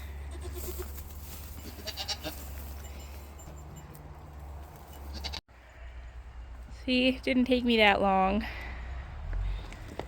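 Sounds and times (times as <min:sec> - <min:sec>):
goats bleating: 0:00.0 - 0:00.9, 0:01.6 - 0:02.6.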